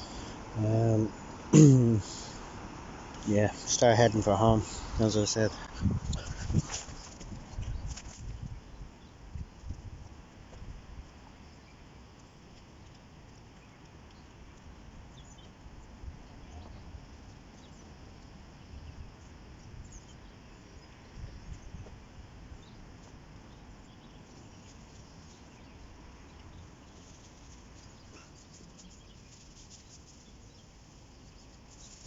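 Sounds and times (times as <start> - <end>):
wind gusts: 0.0 - 28.1
faint bird chirps: 13.5 - 21.9.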